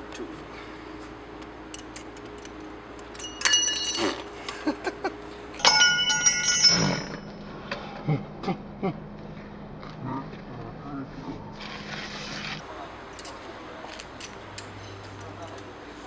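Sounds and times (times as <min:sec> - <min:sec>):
bicycle bell ringing: 0:01.7 - 0:04.5, 0:05.6 - 0:07.4.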